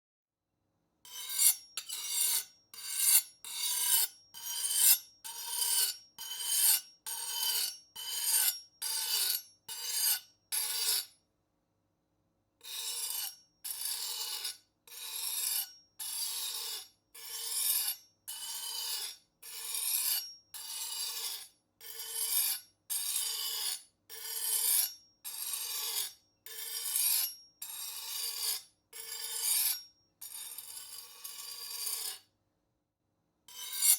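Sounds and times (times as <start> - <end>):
knife sharpening strokes: 1.1 - 11.1, 12.6 - 14.5, 15.2 - 23.8, 24.4 - 27.4, 28.0 - 32.2, 33.5 - 33.9.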